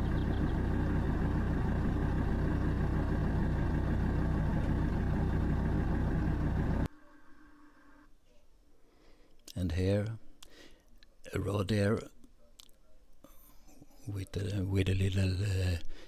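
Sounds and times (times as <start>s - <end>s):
car engine idling: 0.0s - 6.9s.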